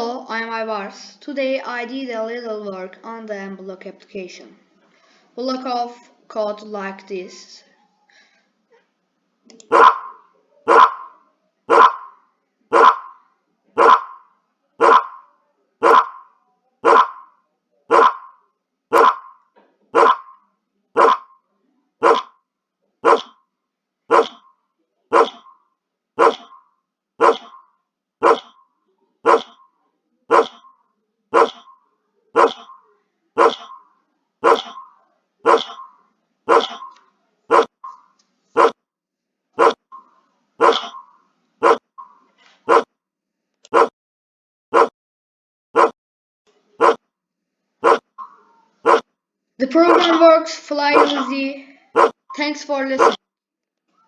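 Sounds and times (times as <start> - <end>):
dog bark sound effect: 9.7 - 13.2, 13.8 - 14.2, 14.8 - 17.3, 17.9 - 18.3, 18.9 - 19.3, 19.9 - 20.4, 21.0 - 21.3, 22.0 - 22.3, 23.0 - 23.3, 24.1 - 24.4, 25.1 - 25.5, 26.2 - 26.6, 27.2 - 27.6, 28.2 - 28.6, 29.2 - 29.6, 30.3 - 30.7, 31.3 - 31.7, 32.3 - 32.8, 33.4 - 33.8, 34.4 - 35.9, 36.5 - 37.8, 38.6 - 38.8, 39.6 - 39.8, 40.6 - 41.0, 41.6 - 41.8, 42.6 - 42.9, 43.7 - 43.9, 44.7 - 44.9, 45.8 - 46.0, 46.8 - 47.0, 47.8 - 48.2, 48.8 - 49.0, 49.8 - 53.2.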